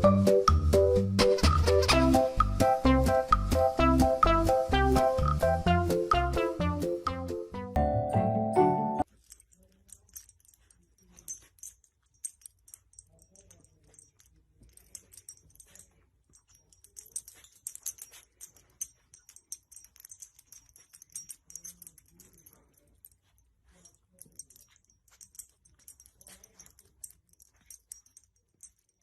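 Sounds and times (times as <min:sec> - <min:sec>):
light jingling: 0:09.0 - 0:29.0.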